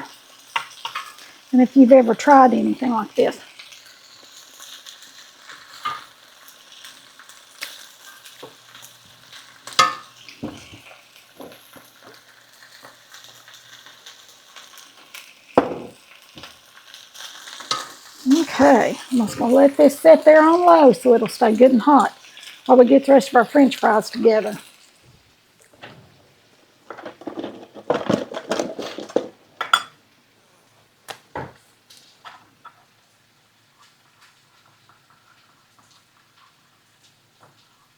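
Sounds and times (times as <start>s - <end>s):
meat sizzling in a frying pan: 0.0s - 28.5s, 29.4s - 37.9s
kitchen dishes clattering: 15.6s - 16.0s, 26.9s - 30.0s.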